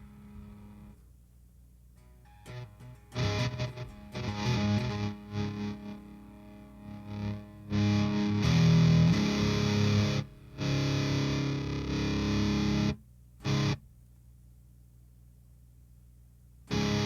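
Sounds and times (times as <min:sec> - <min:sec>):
distorted electric guitar chords: 0:00.0 - 0:01.0, 0:02.1 - 0:13.8, 0:16.7 - 0:17.0
faint low amp hum: 0:00.0 - 0:17.0.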